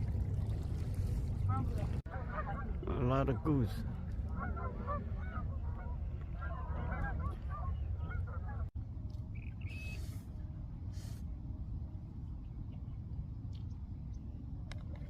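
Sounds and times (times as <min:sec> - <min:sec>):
geese honking: 0:01.5 - 0:02.8, 0:04.3 - 0:08.7.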